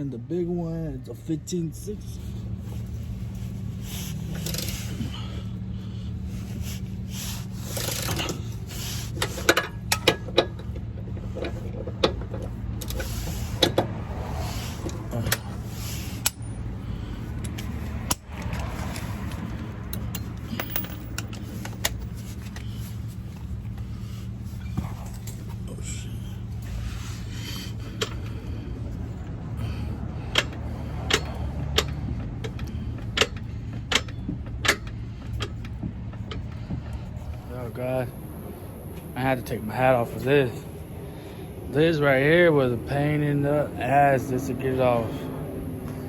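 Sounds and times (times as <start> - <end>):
steady low hum: 0.0 - 46.0
hand tools clinking on metal: 19.9 - 22.2.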